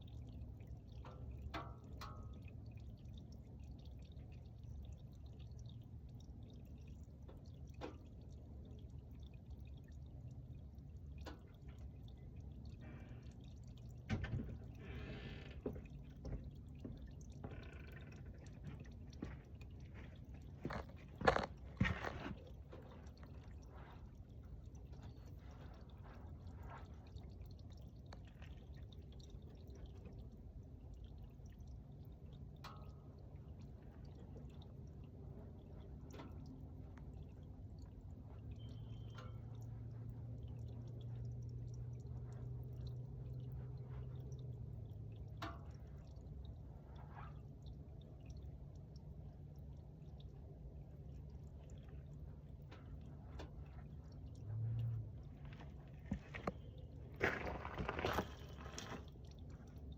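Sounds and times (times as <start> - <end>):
oil dripping into pan: 0.0 - 59.9.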